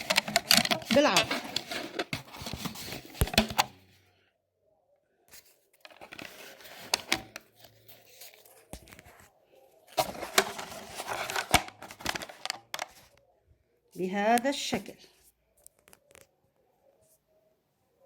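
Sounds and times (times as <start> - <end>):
cardboard and rubber rustling: 0.0 - 3.7, 10.0 - 13.0.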